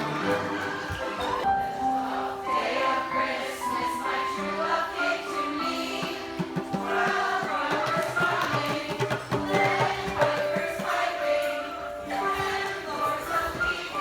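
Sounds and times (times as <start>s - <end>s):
group of voices singing: 0.0s - 14.0s
held instrumental notes: 0.0s - 14.0s
light percussion: 5.7s - 14.0s.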